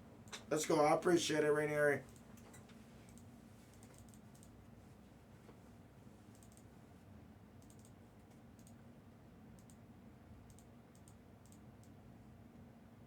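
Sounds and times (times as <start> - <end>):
computer keys clicking: 2.1 - 4.6, 6.3 - 6.7, 7.6 - 8.8, 9.6 - 9.8, 10.5 - 12.0.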